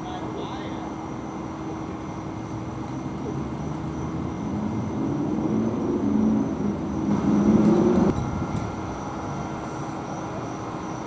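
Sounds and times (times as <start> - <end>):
traffic noise: 0.0 - 11.0
vehicle engine approaching: 2.6 - 8.5.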